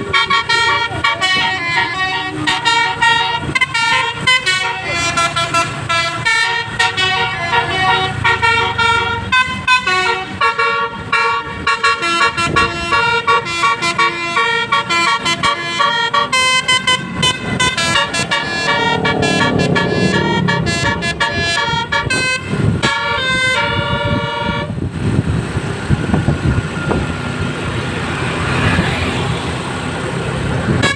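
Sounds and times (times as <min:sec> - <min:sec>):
multi-trumpet air horn tune: 0:00.0 - 0:24.8
bus engine: 0:00.0 - 0:30.9
road noise: 0:00.0 - 0:30.9.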